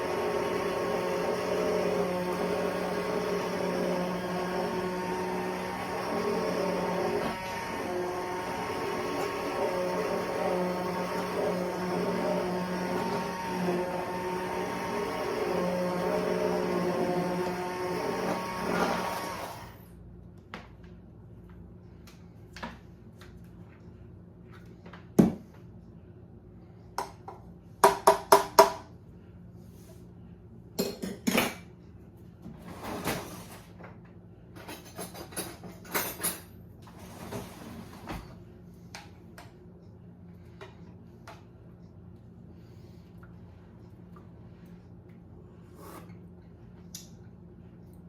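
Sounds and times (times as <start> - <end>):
immersion blender motor winding down: 0.0 - 19.8.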